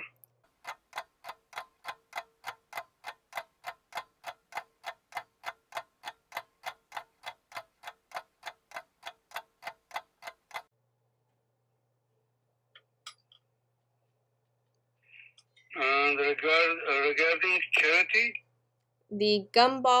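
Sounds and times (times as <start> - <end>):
clock ticking: 0.5 - 10.7.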